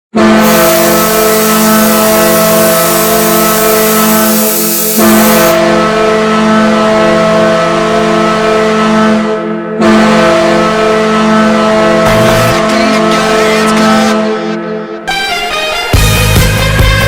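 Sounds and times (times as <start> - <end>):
deep multi-tone goal horn: 0.2 - 13.4
background hiss: 0.5 - 5.6.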